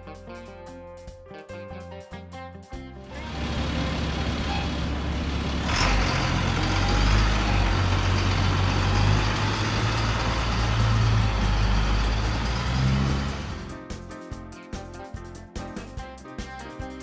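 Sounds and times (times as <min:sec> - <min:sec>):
truck engine rumbling: 0:03.0 - 0:14.0.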